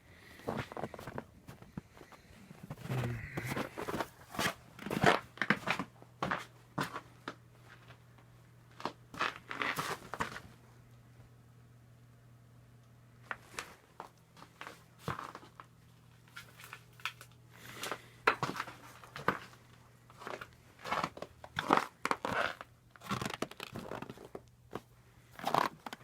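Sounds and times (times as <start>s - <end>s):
faint low hum: 0.0s - 23.0s.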